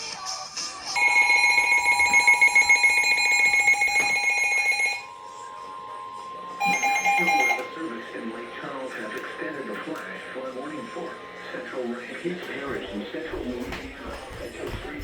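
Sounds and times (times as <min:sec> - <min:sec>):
two-tone alarm pulsing: 0:01.0 - 0:08.6.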